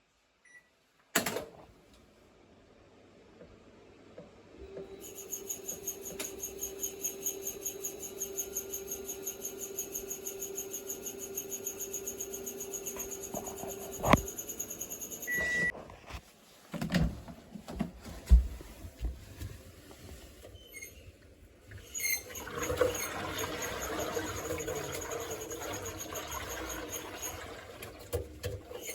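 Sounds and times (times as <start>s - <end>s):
washing machine hum: 1.4s - 15.8s, 16.5s - 28.9s
washing machine squealing: 4.9s - 15.7s, 20.6s - 21.1s, 21.8s - 28.9s.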